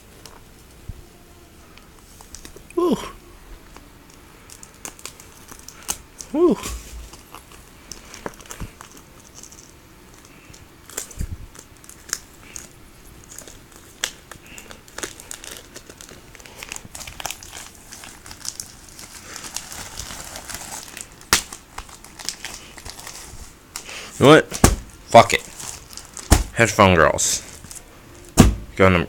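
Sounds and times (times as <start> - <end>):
packaging crinkling and rustling: 1.7 - 2.7, 3.6 - 28.5
sharp knock: 28.4 - 28.7.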